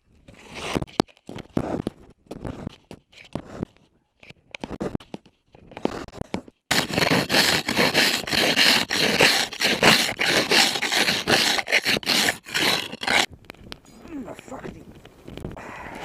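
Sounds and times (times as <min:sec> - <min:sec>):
scraping strokes: 0:05.9 - 0:13.3.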